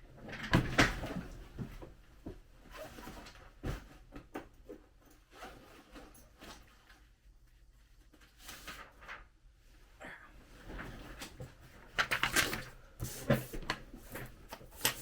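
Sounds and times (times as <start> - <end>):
paper rustling: 10.8 - 15.0.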